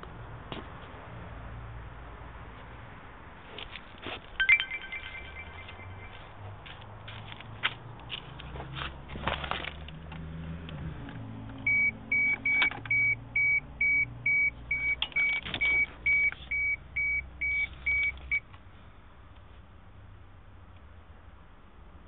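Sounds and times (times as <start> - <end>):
electronic beep: 4.4 - 6.4, 11.7 - 18.4.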